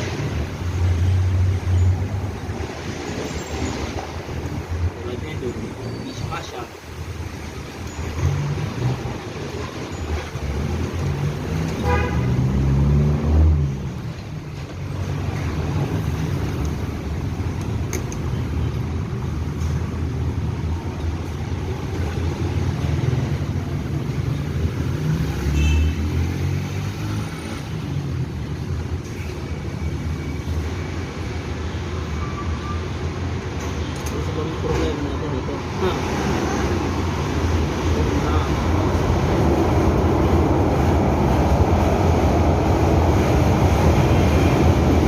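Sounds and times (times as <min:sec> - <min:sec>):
traffic rumble: 0:00.0 - 0:45.0
vehicles passing: 0:00.0 - 0:45.0
horn toot: 0:11.8 - 0:12.7.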